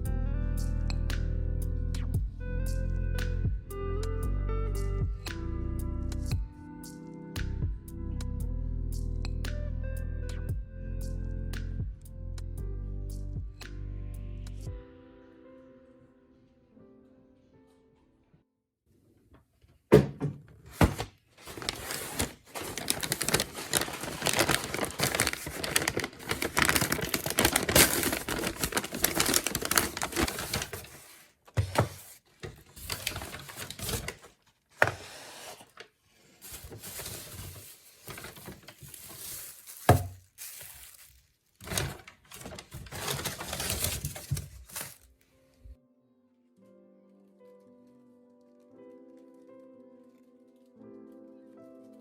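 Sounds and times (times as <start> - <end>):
packaging crinkling and rustling: 20.6 - 45.2.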